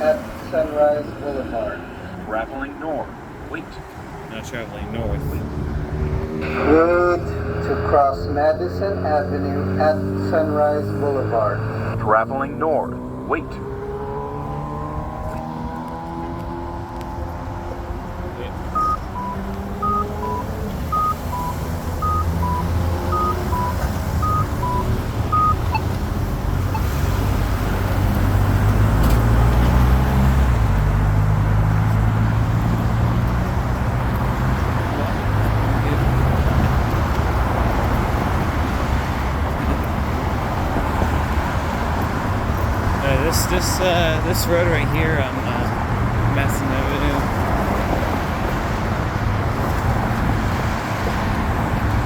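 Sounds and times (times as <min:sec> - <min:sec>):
road traffic rumbling: 0:00.0 - 0:52.0
pedestrian button locator beeps: 0:18.7 - 0:26.0, 0:26.6 - 0:27.0.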